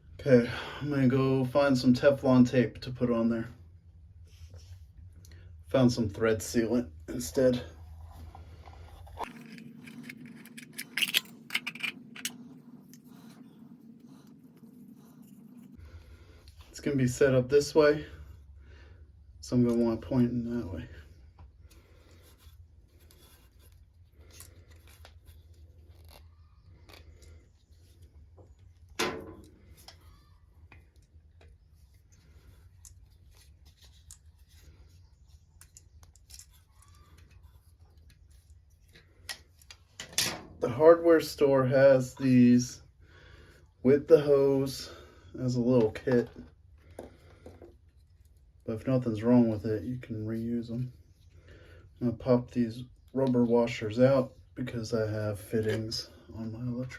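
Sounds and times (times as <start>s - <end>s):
steady low hum: 0.0s - 36.6s
metallic clicks and scrapes: 8.0s - 13.4s.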